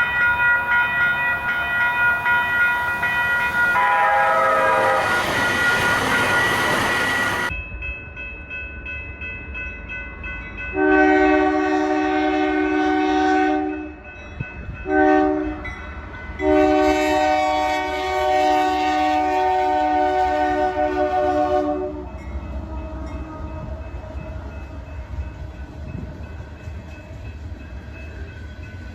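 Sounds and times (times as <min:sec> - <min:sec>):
low rumble of passing train: 0:00.0 - 0:28.9
locomotive air horn blasts: 0:03.8 - 0:07.5, 0:10.8 - 0:13.9, 0:14.8 - 0:15.7, 0:16.4 - 0:24.1.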